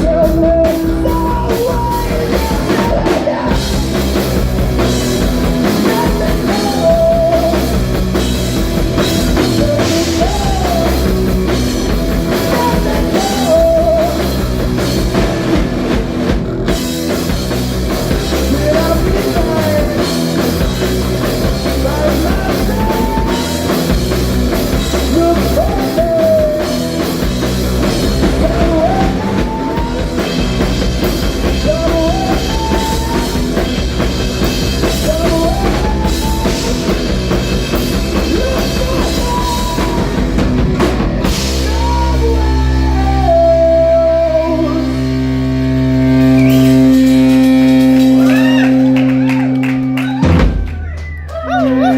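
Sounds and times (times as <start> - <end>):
person singing: 0.0 - 4.2, 5.5 - 7.9, 9.0 - 11.6, 12.3 - 14.5, 18.2 - 20.6, 21.3 - 23.9, 24.9 - 27.0, 27.9 - 30.7, 31.3 - 33.8, 34.8 - 37.0, 38.0 - 40.4, 41.2 - 49.6
drum kit: 0.0 - 51.9
rock band playing: 0.0 - 51.9.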